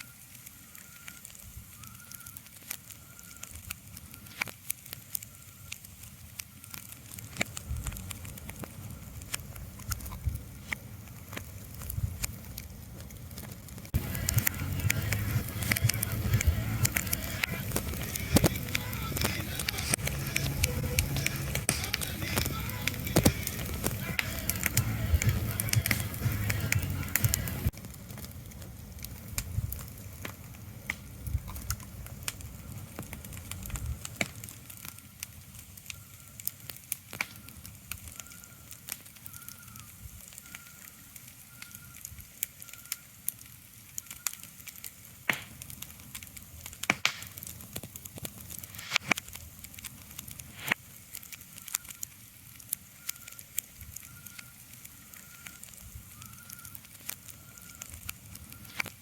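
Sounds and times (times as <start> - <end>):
crackling with sharp clicks: 0.0 - 59.0
low rumble: 14.0 - 30.0.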